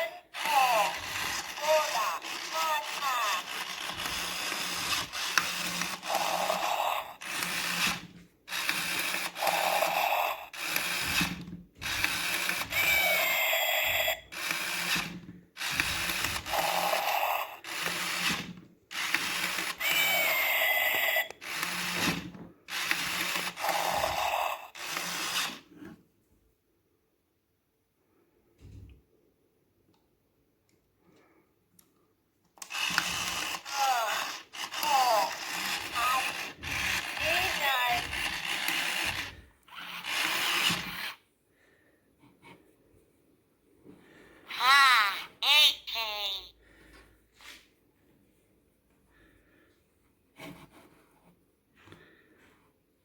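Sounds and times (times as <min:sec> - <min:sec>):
toy motor and gears whirring: 0:00.0 - 0:25.7, 0:32.6 - 0:41.2.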